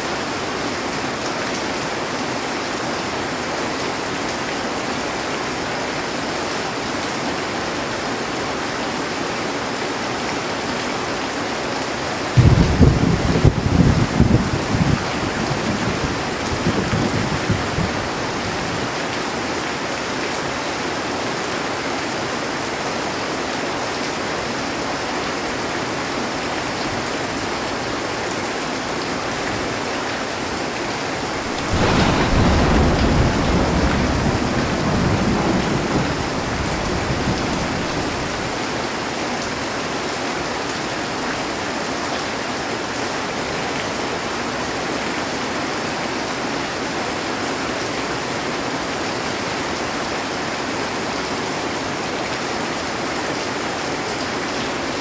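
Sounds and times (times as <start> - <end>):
heavy rain on a metal roof: 0.0 - 55.0
thunder rumbling: 12.4 - 19.0, 31.2 - 38.8.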